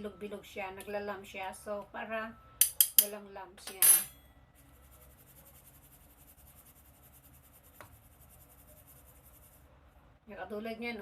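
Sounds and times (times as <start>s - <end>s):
flour sifted through sieve: 4.6s - 9.7s.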